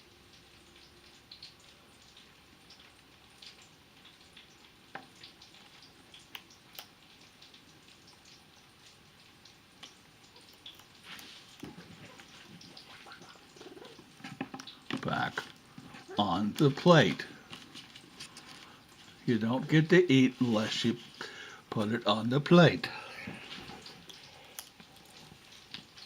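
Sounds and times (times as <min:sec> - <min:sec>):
parrot beak nibbling: 0:09.8 - 0:16.2.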